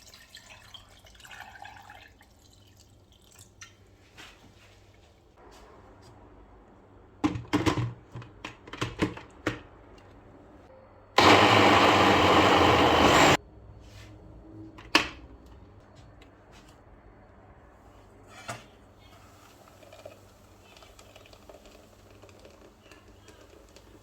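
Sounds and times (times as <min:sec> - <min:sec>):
electric blender running: 0:11.2 - 0:13.4.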